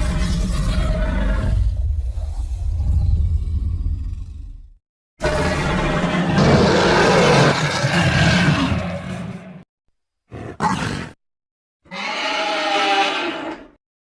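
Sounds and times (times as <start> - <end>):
creature roaring: 0.0 - 9.6, 10.3 - 11.2.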